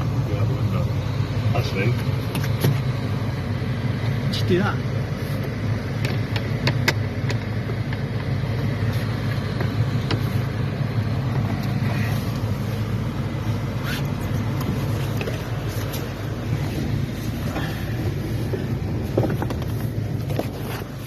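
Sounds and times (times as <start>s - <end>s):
engine running: 0.0s - 21.0s
sharp knocks and clatters: 6.0s - 8.4s, 18.4s - 21.0s.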